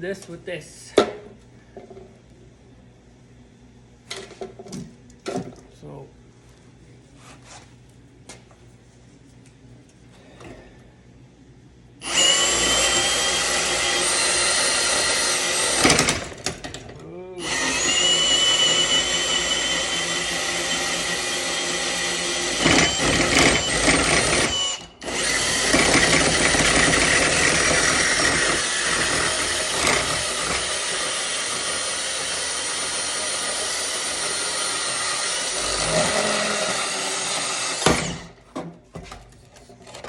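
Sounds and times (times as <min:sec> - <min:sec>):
power tool cutting pipe: 0:12.0 - 0:16.5, 0:17.4 - 0:38.4.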